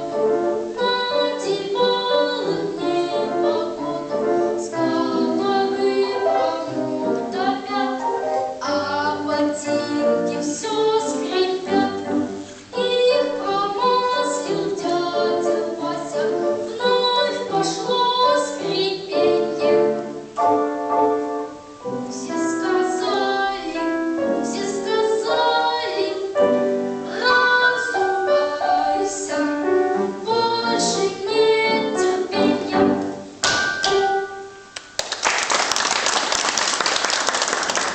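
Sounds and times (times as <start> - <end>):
piano accompaniment: 0.0 - 37.9
boy singing: 0.8 - 8.0, 12.7 - 20.0, 22.1 - 26.3, 27.1 - 29.6.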